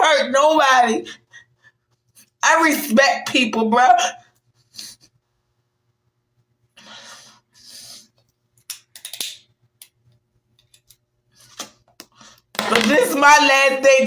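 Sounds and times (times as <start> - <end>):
person breathing heavily: 6.8 - 8.1.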